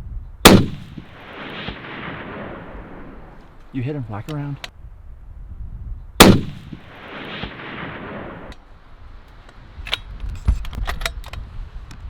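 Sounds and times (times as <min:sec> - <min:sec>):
rifle shot echoing: 0:00.4 - 0:03.4, 0:06.2 - 0:08.5.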